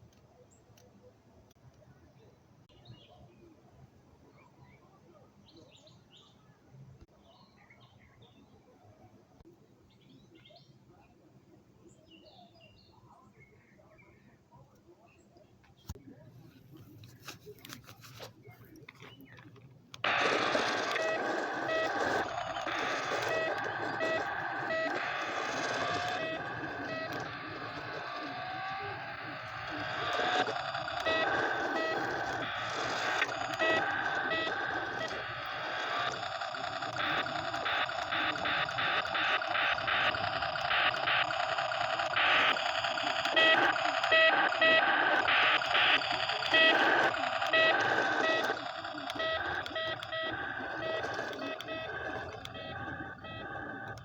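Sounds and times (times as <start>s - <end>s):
toy recorded engine noise: 15.7s - 54.0s
reversing alarm beeps: 20.0s - 54.0s.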